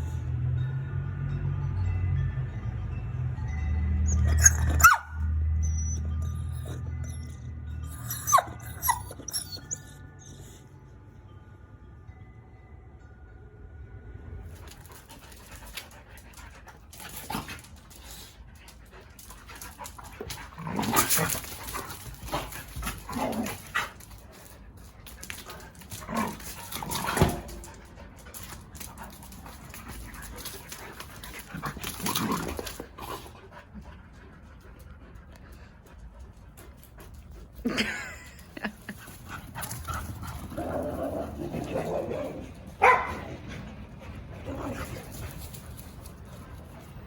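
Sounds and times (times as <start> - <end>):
dogs panting: 14.7 - 38.0, 38.6 - 40.6, 42.5 - 47.0
dog barking outbursts: 42.8 - 43.3.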